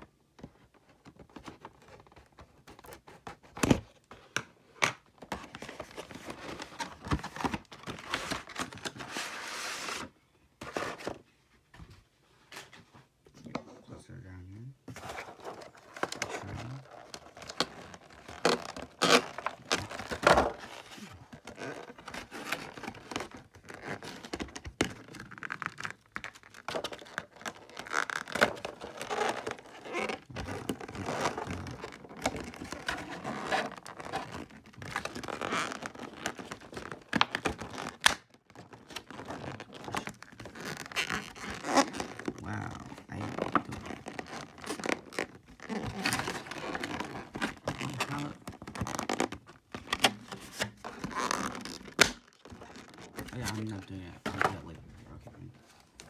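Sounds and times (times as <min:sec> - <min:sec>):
card box packaging crinkling and tearing: 0:04.8 - 0:11.2, 0:14.9 - 0:54.8.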